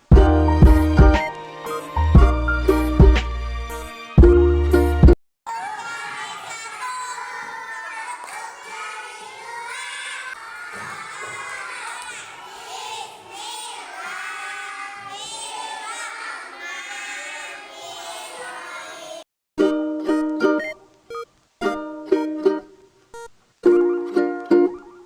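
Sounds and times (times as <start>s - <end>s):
children shouting and cheering: 5.5s - 19.2s.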